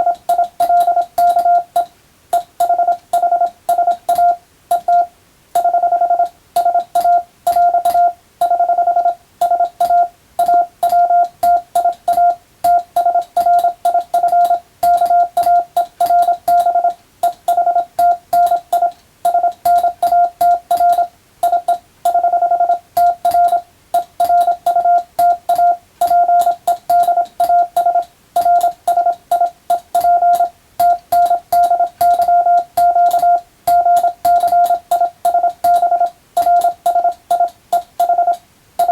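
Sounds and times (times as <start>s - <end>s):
morse code tone: 0.0s - 38.9s
telegraph key clicking: 23.0s - 38.9s.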